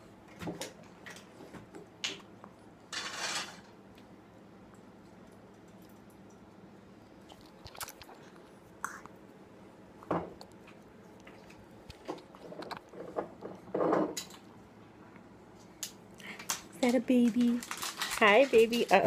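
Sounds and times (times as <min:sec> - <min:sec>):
apple crunching while chewed: 0:07.2 - 0:09.2.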